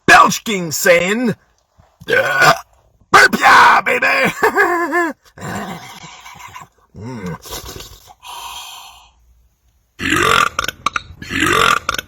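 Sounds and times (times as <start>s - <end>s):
man belching loudly: 2.0s - 2.8s, 4.0s - 8.0s, 10.0s - 12.0s.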